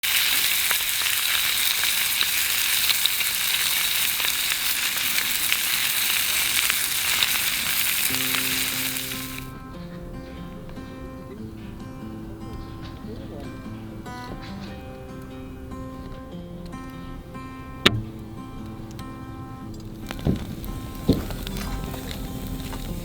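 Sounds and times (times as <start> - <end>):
food sizzling in a pan: 0.0 - 9.5, 20.0 - 23.0
acoustic guitar music: 0.0 - 23.0.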